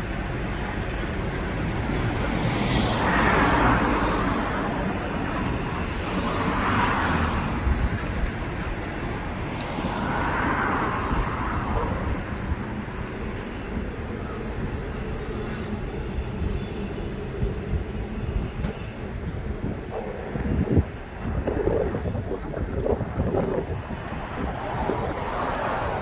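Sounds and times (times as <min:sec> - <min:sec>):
low traffic rumble: 0:00.0 - 0:26.0
vehicles passing: 0:17.7 - 0:26.0.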